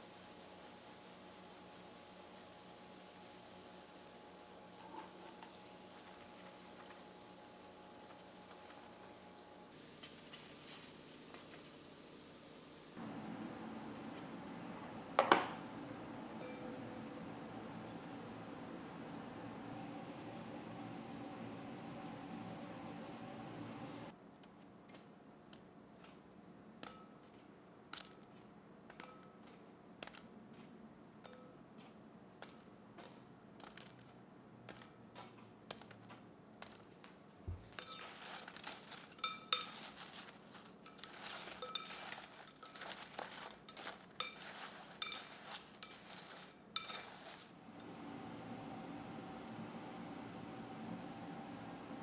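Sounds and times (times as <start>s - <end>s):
rustling: 0.0s - 13.0s, 36.6s - 47.6s
steady hum: 11.9s - 24.1s, 47.6s - 52.0s
utensils clinking on dishes: 16.4s - 17.0s, 37.7s - 47.6s.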